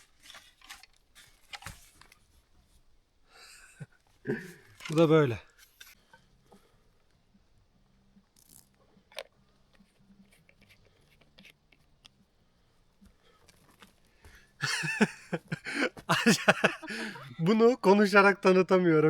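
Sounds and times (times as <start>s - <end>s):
small clicks and rustles: 0.0s - 3.0s, 3.8s - 14.6s.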